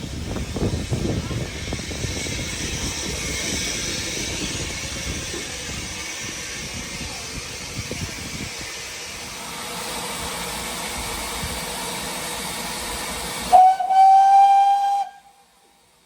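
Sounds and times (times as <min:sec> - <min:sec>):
steam hissing: 0:00.0 - 0:16.0
steam whistle blast: 0:13.4 - 0:15.5.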